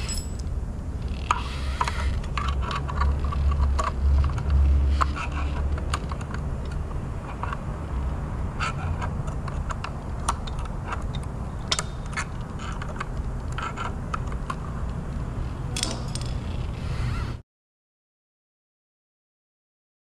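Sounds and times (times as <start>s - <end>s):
metal tools clinking: 0.0s - 0.5s, 15.7s - 16.4s
steady low hum: 0.0s - 17.4s.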